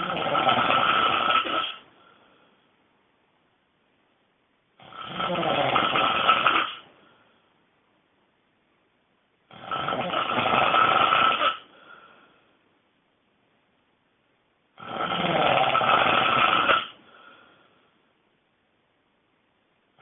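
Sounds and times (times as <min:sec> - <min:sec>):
person snoring loudly: 0:00.0 - 0:01.8, 0:04.8 - 0:06.9, 0:09.5 - 0:11.7, 0:14.8 - 0:17.0.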